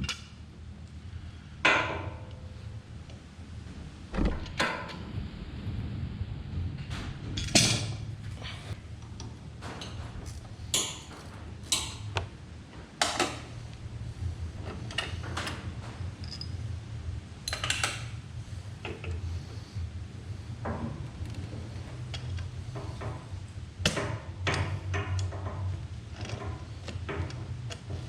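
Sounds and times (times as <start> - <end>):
steady low hum: 0.0 - 28.0
clicks and clinks of parts: 9.2 - 12.3, 16.2 - 16.6.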